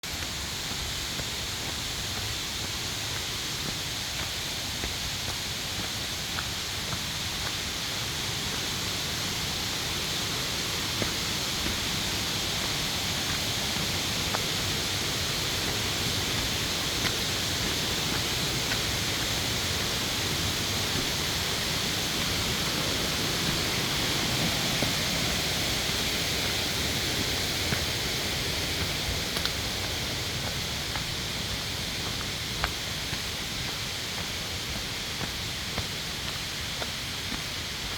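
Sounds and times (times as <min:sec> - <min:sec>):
stream water rushing: 0:00.0 - 0:37.9.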